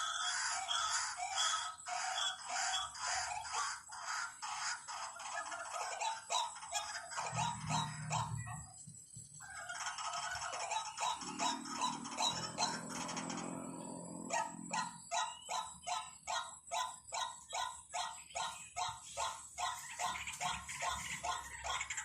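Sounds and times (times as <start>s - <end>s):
waterhen call: 0.0s - 8.6s, 17.2s - 22.0s.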